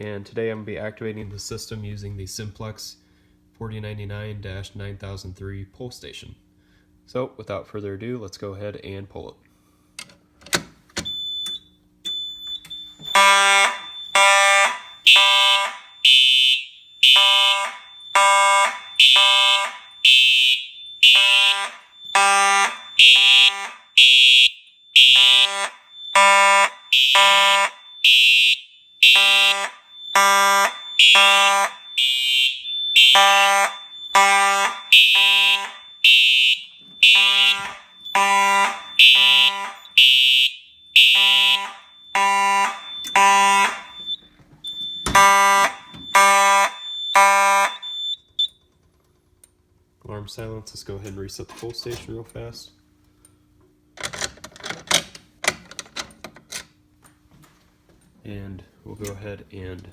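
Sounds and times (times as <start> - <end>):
fire alarm horn blasts: 11.1 - 48.6
electronic horn: 13.1 - 44.2, 45.1 - 48.0
mechanical horn buzzing: 13.1 - 48.2.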